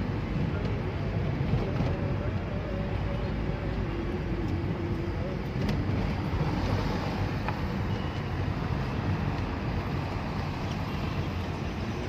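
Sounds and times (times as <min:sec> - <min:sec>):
vehicle rumble: 0:00.0 - 0:12.0.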